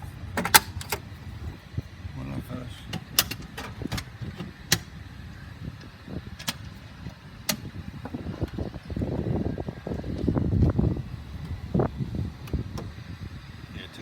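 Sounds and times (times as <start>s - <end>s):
low rumbling noise: 0.0s - 14.0s
metal panel latch clicks: 0.4s - 1.1s, 2.9s - 4.9s, 6.4s - 6.8s, 7.4s - 7.7s.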